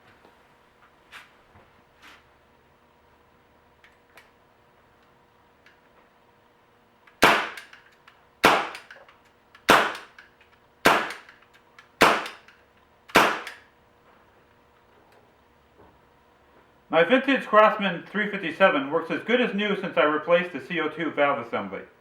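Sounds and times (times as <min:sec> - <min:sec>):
air pistol shots: 0:07.2 - 0:07.8, 0:08.4 - 0:09.0, 0:09.6 - 0:10.2, 0:10.8 - 0:11.4, 0:12.0 - 0:12.5, 0:13.1 - 0:13.7.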